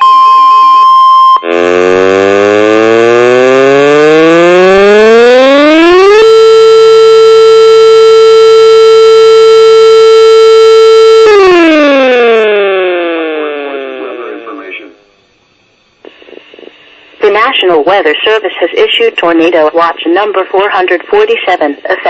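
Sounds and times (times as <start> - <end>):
steady tone: 1.4 - 6.8, 9.4 - 15.2
civil defense siren wailing: 1.4 - 14.0.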